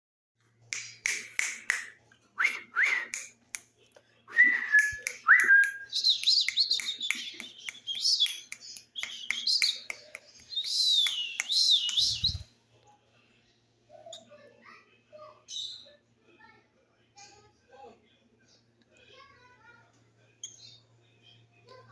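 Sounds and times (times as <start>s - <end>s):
whistled notes: 4.3s - 9.8s, 10.5s - 12.4s.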